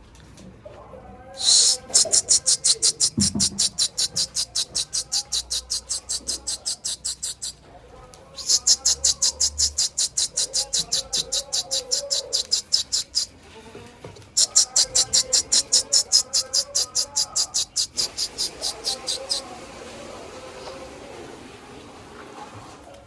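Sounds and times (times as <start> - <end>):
rapid high-pitched chirping: 1.4 - 7.6, 8.4 - 13.4, 14.3 - 19.5.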